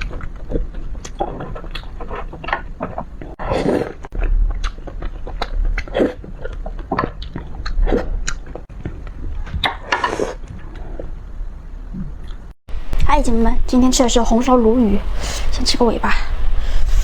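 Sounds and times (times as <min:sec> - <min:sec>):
person chewing wetly: 0:00.0 - 0:11.2.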